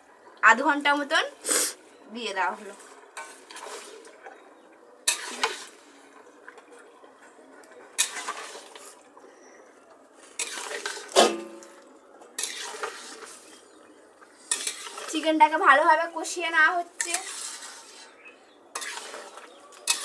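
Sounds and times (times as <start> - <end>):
spoon scraping a cooking pan: 2.5 - 4.4, 5.0 - 6.2, 7.9 - 9.1, 10.2 - 15.7, 16.7 - 20.0.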